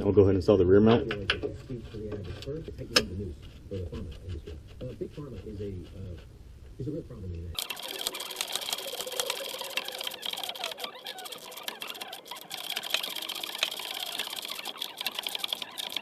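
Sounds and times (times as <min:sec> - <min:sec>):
ratchet wrench clicking: 0:07.6 - 0:16.0.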